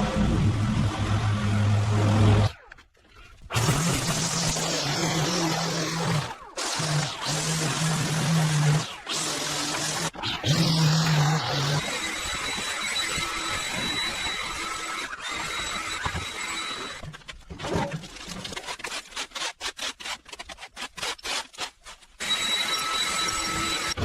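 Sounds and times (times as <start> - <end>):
power equipment motor running: 0.0 - 2.5.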